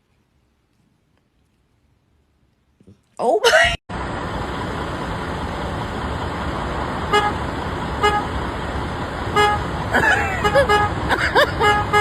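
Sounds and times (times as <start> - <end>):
road traffic noise: 3.5 - 12.0.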